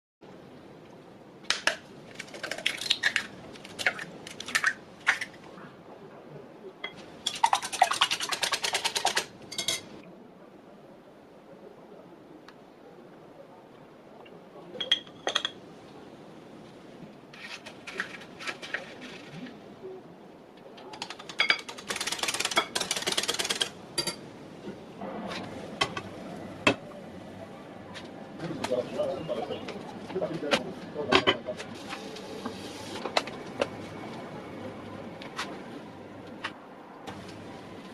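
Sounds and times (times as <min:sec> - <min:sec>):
utensil beating eggs in bowl: 0:07.2 - 0:09.4.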